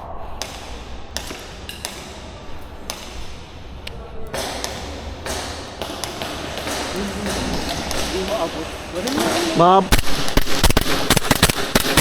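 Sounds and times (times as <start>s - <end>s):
airsoft gun shots: 9.9s - 12.0s.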